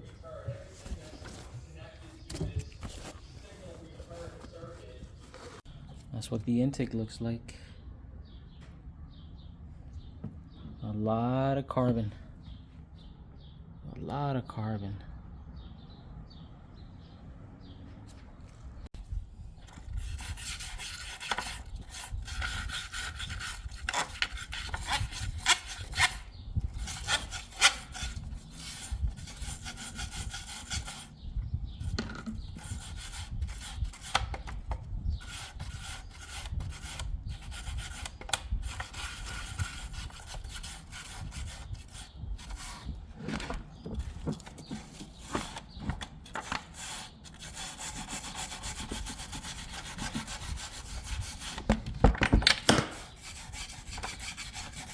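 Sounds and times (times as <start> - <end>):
hand tool scraping metal: 20.0 - 31.2.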